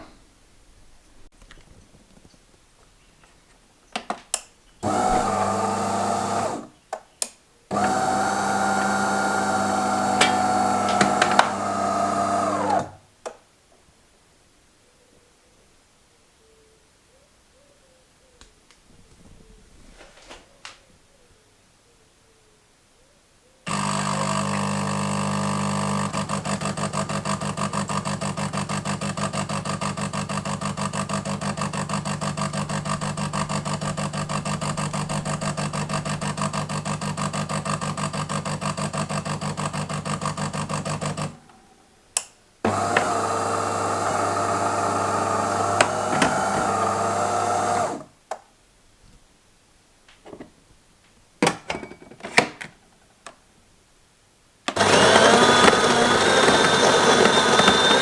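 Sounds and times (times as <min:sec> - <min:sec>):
espresso machine pump humming: 0:04.8 - 0:06.6, 0:07.7 - 0:12.9, 0:23.7 - 0:41.2, 0:42.7 - 0:48.0, 0:54.7 - 0:58.0.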